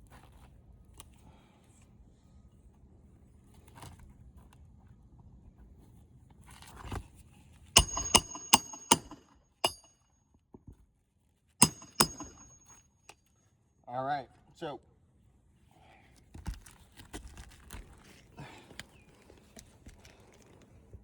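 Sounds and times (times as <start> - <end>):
hammer striking nails: 7.8 - 9.9, 11.6 - 12.8.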